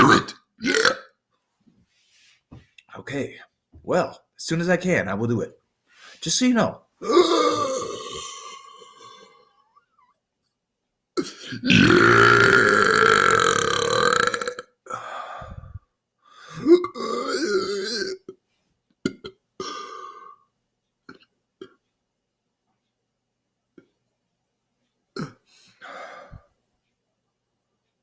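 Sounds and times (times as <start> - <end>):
man belching loudly: 0.0 - 1.1, 7.0 - 9.3, 11.2 - 14.6, 16.6 - 18.4
short quiet burps: 0.0 - 1.1, 19.0 - 20.4, 21.1 - 21.8, 25.2 - 25.5.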